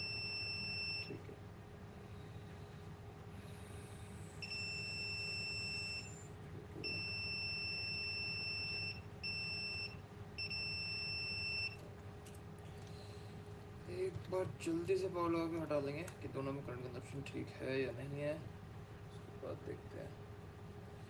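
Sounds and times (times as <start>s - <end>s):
multimeter beeps: 0.0s - 1.2s, 4.4s - 6.2s, 6.8s - 11.8s.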